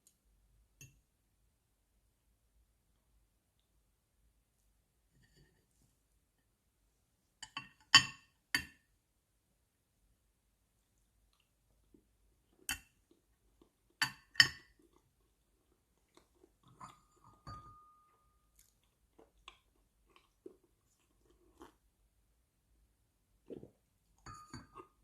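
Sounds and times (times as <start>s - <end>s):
quiet chewing: 10.8s - 21.9s.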